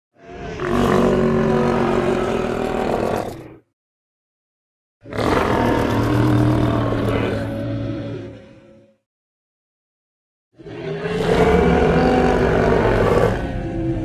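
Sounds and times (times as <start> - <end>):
low drawn-out dinosaur call: 10.6 - 14.0.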